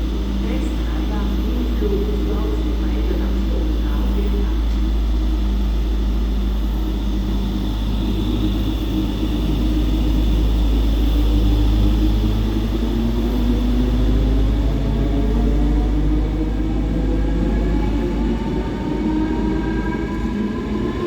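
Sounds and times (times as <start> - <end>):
electric train rumbling: 0.0 - 21.0
humming train drive: 0.0 - 21.0.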